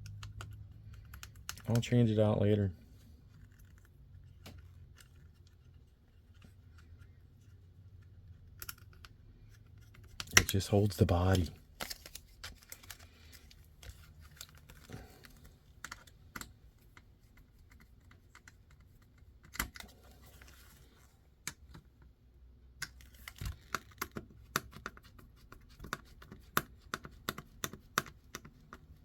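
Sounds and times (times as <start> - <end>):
small parts and tools clicking: 0.0 - 1.9, 3.3 - 20.4.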